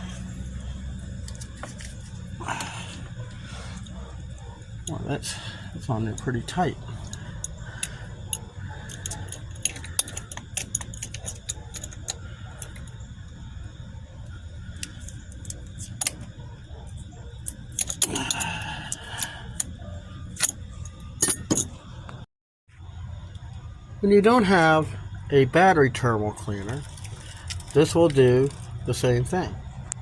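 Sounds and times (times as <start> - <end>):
low background hum: 0.0 - 30.0
wrench clicking and clinking: 7.0 - 13.0, 17.4 - 19.7, 20.3 - 21.8.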